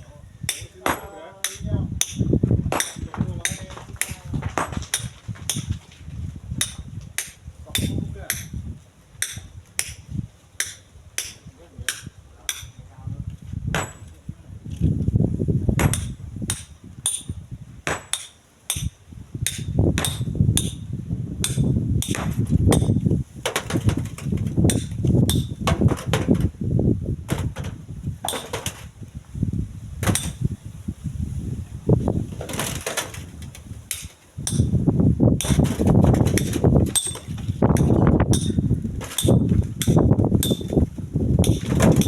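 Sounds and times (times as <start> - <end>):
wind buffeting microphone: 0.0 - 42.0
sharp irregular knocks: 0.5 - 6.0, 15.8 - 20.8, 21.4 - 26.5, 27.3 - 28.9, 30.0 - 30.5, 32.3 - 34.8, 35.4 - 42.0.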